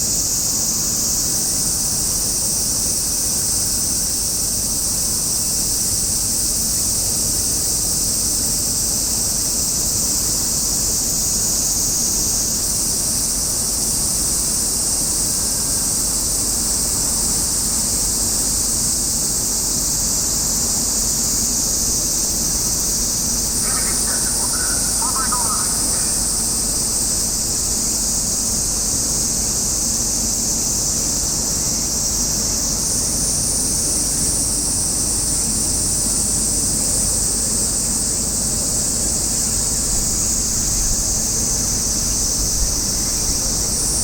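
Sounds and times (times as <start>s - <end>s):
loud high-pitched hiss: 14.8s - 33.8s.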